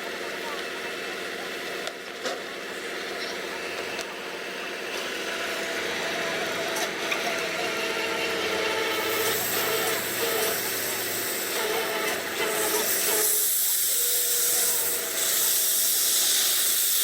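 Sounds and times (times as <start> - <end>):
heavy machine engine running: 0.0 - 17.0
hiss: 12.4 - 17.0.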